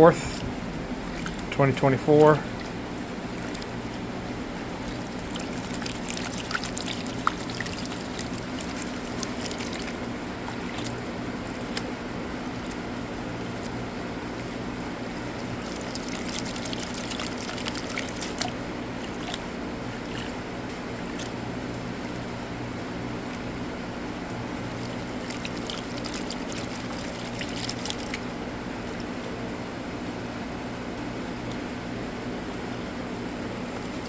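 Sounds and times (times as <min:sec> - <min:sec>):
low mechanical hum: 0:00.0 - 0:34.0
water sloshing in a pan: 0:00.8 - 0:12.0, 0:15.2 - 0:29.2.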